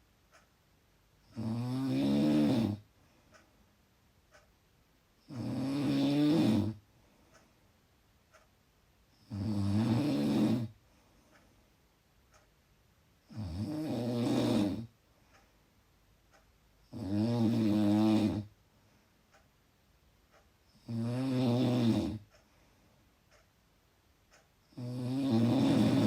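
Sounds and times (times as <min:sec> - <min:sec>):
loud snoring: 0:01.3 - 0:02.8, 0:05.3 - 0:06.8, 0:09.2 - 0:10.8, 0:13.3 - 0:14.9, 0:16.9 - 0:18.5, 0:20.8 - 0:22.3, 0:24.7 - 0:26.0.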